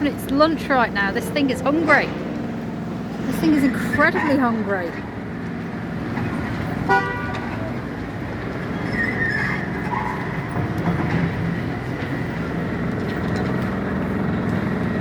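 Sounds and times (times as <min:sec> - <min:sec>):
street traffic rumble: 0:00.0 - 0:15.0
vehicle horn toot: 0:06.9 - 0:07.6.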